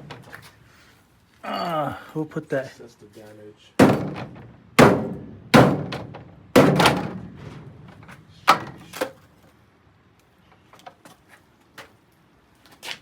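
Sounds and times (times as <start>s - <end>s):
hard ringing knocks: 3.8s - 8.8s.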